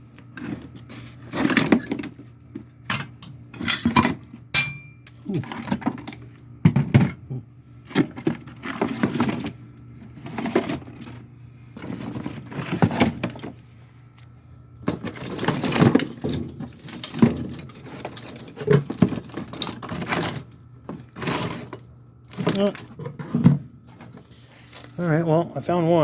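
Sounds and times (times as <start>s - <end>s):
metal hardware rattling and clinking: 3.2s - 5.2s, 15.3s - 23.4s.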